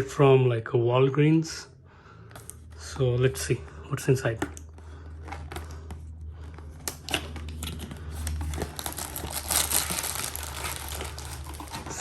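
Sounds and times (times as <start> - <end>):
packaging rustling and crinkling: 4.9 - 12.0.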